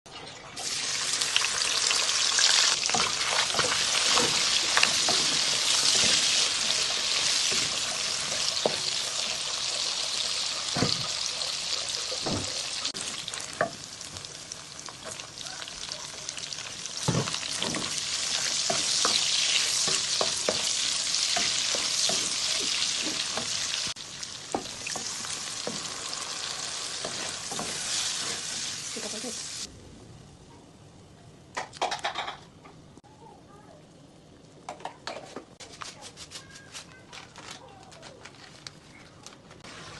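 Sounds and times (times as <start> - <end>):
food sizzling in a pan: 0.6 - 29.7
utensil scraping a pan: 26.9 - 29.1.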